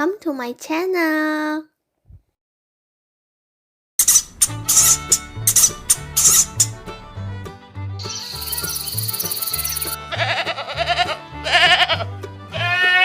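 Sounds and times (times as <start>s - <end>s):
insect trill: 4.0s - 6.8s, 8.0s - 10.0s
background music with bass line: 4.1s - 13.0s
quavering bleats: 8.0s - 8.7s, 10.0s - 13.0s.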